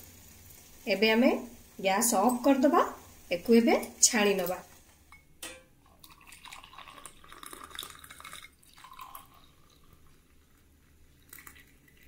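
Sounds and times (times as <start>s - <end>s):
liquid trickling and dripping: 5.1s - 12.0s.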